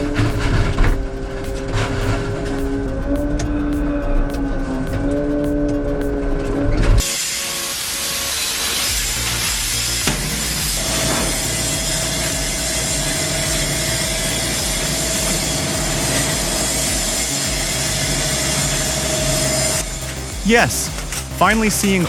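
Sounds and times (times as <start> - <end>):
rough grinding noise: 6.4 - 21.4.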